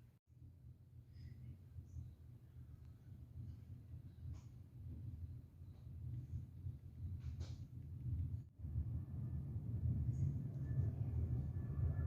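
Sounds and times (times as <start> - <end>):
distant jet engine rumble: 6.2 - 12.0.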